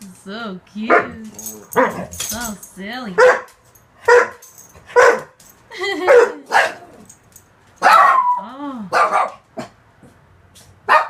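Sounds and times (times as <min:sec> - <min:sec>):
dogs barking: 0:00.8 - 0:02.2, 0:03.2 - 0:07.2, 0:07.8 - 0:09.8
dog whining: 0:07.8 - 0:08.6.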